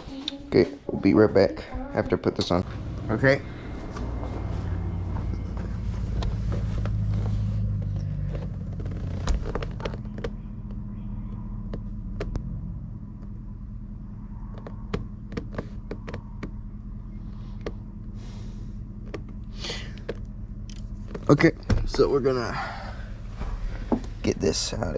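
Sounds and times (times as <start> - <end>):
steady low rumble: 0.0 - 24.9
light clicks and knocks: 14.5 - 16.6.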